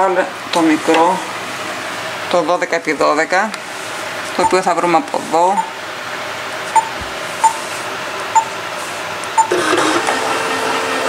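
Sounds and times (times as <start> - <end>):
touchscreen beeps: 4.4 - 4.7, 6.8 - 7.6.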